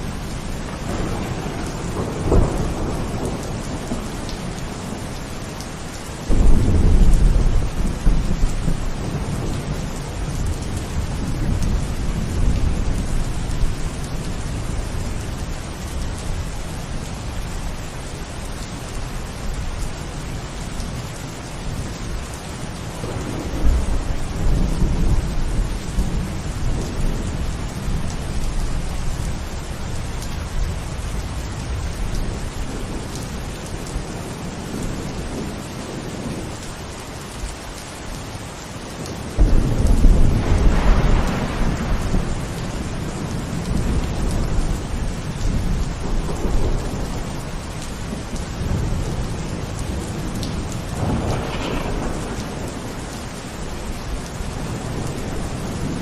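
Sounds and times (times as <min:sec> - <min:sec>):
rolling thunder: 0:00.0 - 0:18.2, 0:21.7 - 0:36.6, 0:39.0 - 0:56.0
heavy rain falling: 0:00.0 - 0:56.0
thunder crack: 0:00.8 - 0:04.2, 0:06.3 - 0:09.4, 0:39.4 - 0:44.7, 0:50.8 - 0:52.9.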